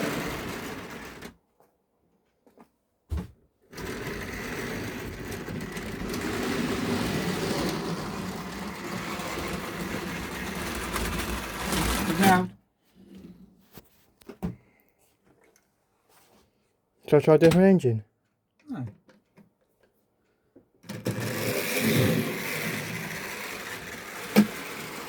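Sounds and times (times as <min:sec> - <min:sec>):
model train running on track: 0:00.0 - 0:01.3, 0:05.4 - 0:12.4, 0:21.1 - 0:25.0.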